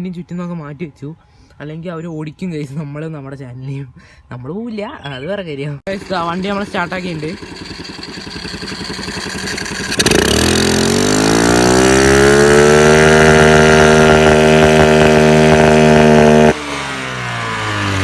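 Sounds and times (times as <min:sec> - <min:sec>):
scooter engine revving: 0:05.9 - 0:18.0.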